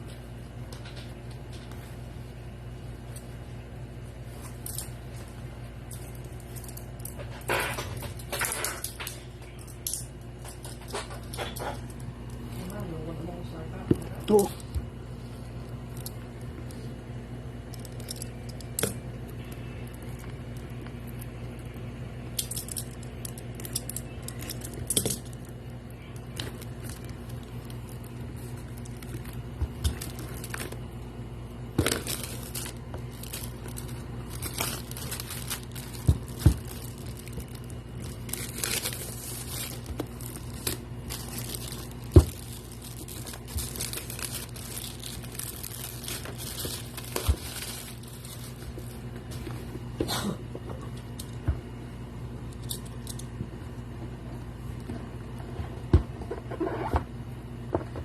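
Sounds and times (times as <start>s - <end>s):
steady low hum: 0.0s - 58.0s
wrapping crinkling and tearing: 17.5s - 49.7s.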